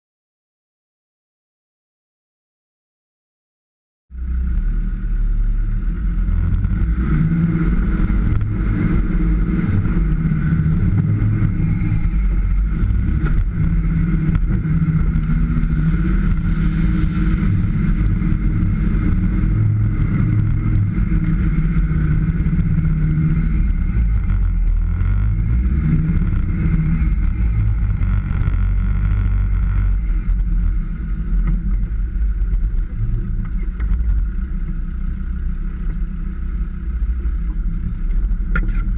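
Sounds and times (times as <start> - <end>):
off-road vehicle engine revving: 4.1 - 38.9.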